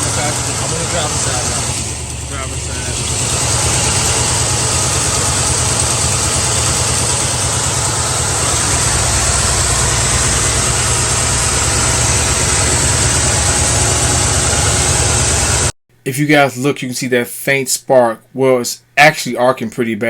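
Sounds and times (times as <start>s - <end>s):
car engine idling unevenly: 0.0s - 15.7s.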